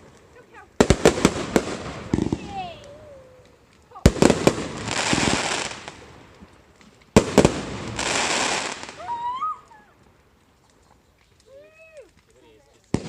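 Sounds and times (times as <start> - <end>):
fireworks bangs: 0.0 - 10.1, 12.8 - 13.0
fireworks hissing spray: 0.8 - 6.3, 7.1 - 9.4.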